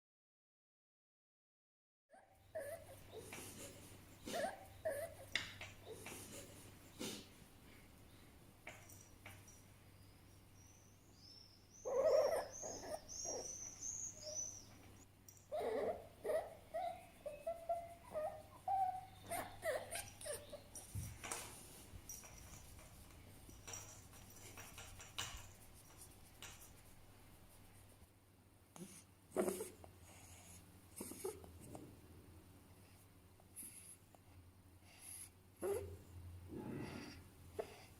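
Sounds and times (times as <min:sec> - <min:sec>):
fox high-pitched chirps: 0:11.7 - 0:14.7, 0:15.5 - 0:20.8
fox whining calls: 0:11.7 - 0:14.7, 0:15.5 - 0:20.8.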